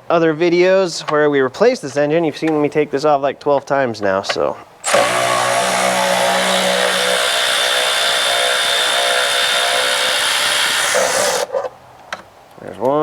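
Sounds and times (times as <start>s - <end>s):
handheld power tool running: 4.8s - 11.5s.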